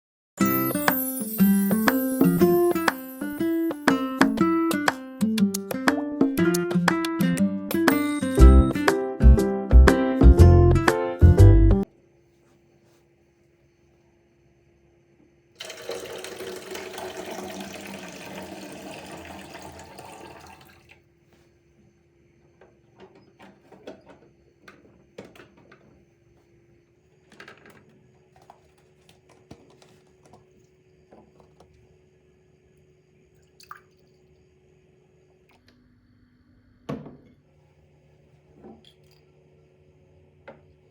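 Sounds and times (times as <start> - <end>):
water running from tap: 15.6 - 21.0.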